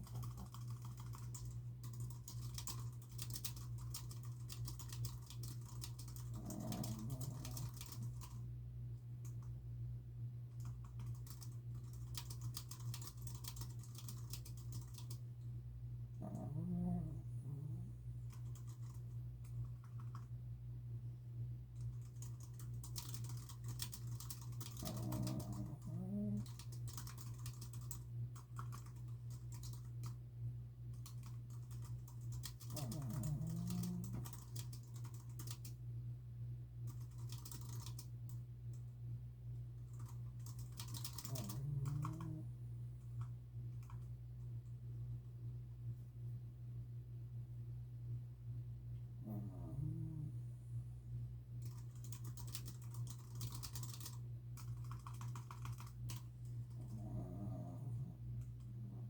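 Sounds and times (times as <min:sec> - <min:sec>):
typing on keyboard: 0:00.0 - 0:08.4, 0:10.6 - 0:15.2, 0:18.3 - 0:20.3, 0:21.8 - 0:30.2, 0:30.9 - 0:35.8, 0:36.9 - 0:38.4, 0:39.9 - 0:42.4, 0:43.2 - 0:44.1, 0:51.6 - 0:57.1
steady low hum: 0:00.0 - 0:59.0
dog snoring: 0:06.4 - 0:08.0, 0:16.2 - 0:18.0, 0:24.8 - 0:26.5, 0:32.7 - 0:34.4, 0:41.2 - 0:42.5, 0:49.2 - 0:50.4, 0:56.8 - 0:58.2.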